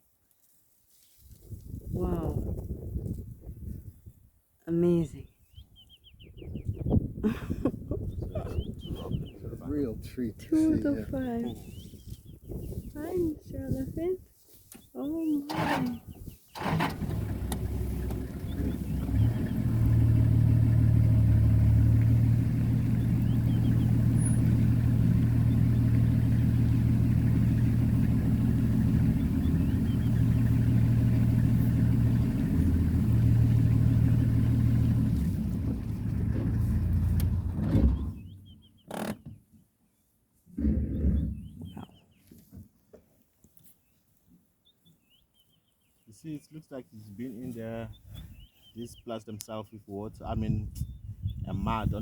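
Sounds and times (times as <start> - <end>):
vehicle engine running: 15.5 - 38.6.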